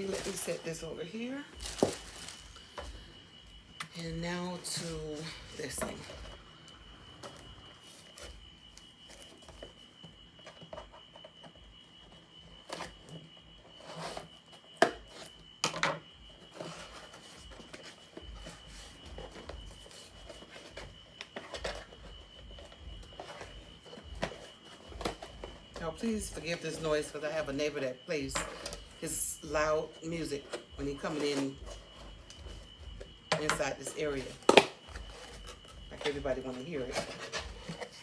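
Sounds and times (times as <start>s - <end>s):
packaging clicks and rubbing: 1.6s - 2.6s.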